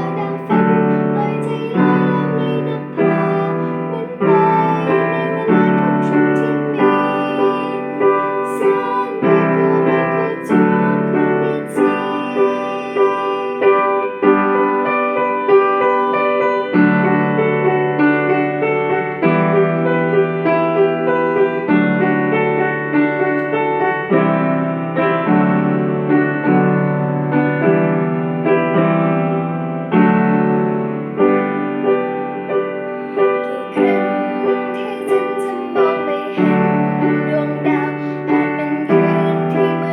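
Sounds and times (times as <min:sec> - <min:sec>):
piano ballad chords: 0:00.0 - 0:39.9.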